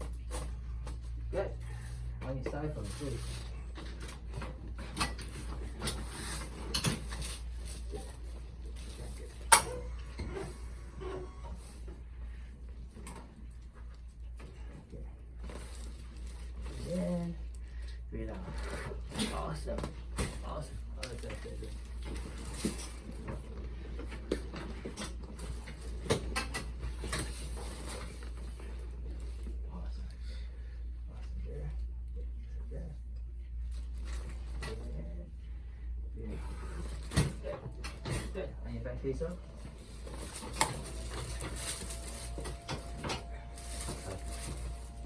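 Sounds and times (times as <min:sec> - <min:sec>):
steady low hum: 0:00.0 - 0:45.0
low hum: 0:27.4 - 0:45.0
rustling: 0:36.4 - 0:45.0.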